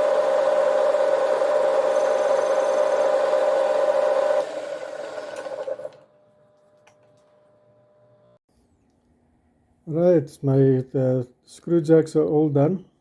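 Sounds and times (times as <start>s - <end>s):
metal lathe whining: 0.0s - 6.0s.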